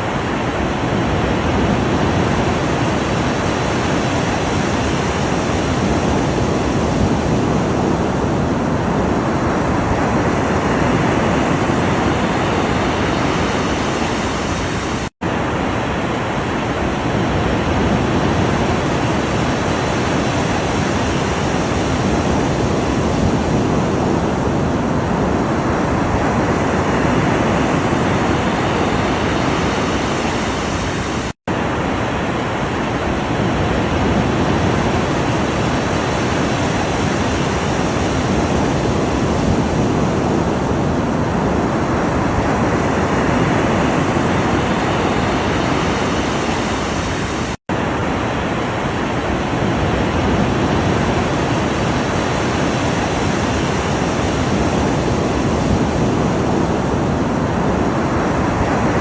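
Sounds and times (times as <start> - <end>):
ocean waves rushing: 0.0 - 59.0.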